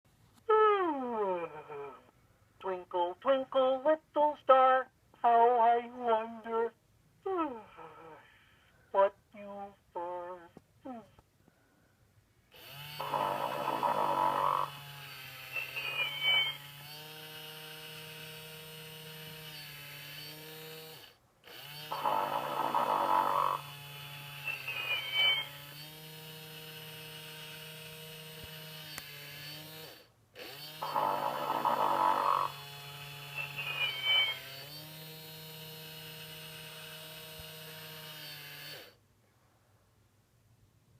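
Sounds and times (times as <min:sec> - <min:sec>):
toy snoring: 0:00.7 - 0:02.1, 0:12.6 - 0:39.0
whistle bending in pitch: 0:33.4 - 0:34.4.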